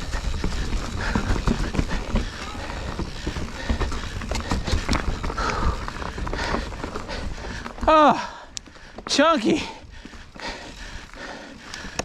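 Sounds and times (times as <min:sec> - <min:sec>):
bike frame rattling clicks: 0:00.0 - 0:09.2
bike tyres knocking over rocks: 0:00.0 - 0:12.0.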